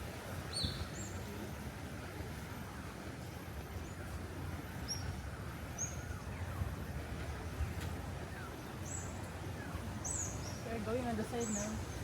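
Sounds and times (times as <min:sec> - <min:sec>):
birds chirping: 0:08.2 - 0:12.0.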